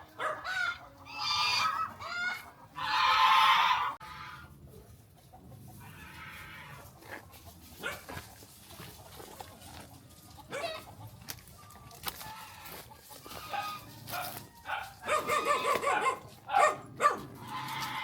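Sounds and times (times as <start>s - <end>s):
chickens clucking softly: 0.0s - 16.5s.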